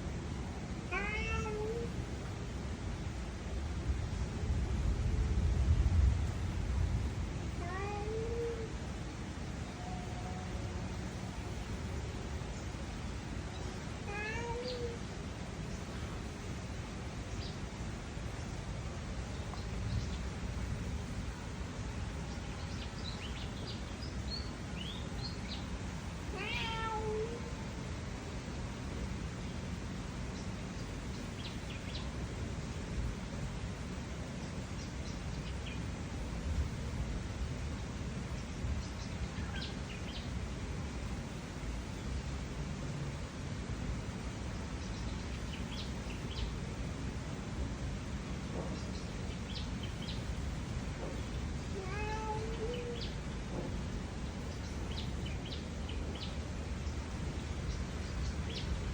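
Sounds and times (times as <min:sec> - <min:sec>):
outdoor background noise: 0:00.0 - 0:58.9
cat meowing: 0:00.9 - 0:02.0, 0:07.6 - 0:08.7, 0:09.6 - 0:11.1, 0:14.0 - 0:15.0, 0:26.3 - 0:27.6, 0:51.7 - 0:53.2.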